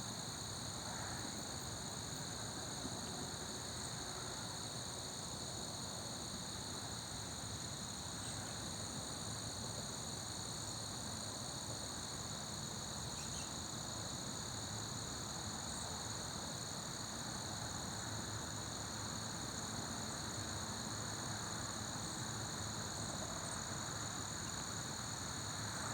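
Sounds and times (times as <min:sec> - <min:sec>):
crickets trilling: 0:12.8 - 0:17.2.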